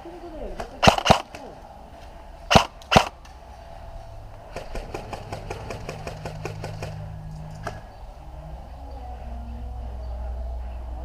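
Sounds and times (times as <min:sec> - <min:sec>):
airsoft gun shots: 0:00.6 - 0:01.5, 0:02.5 - 0:03.2.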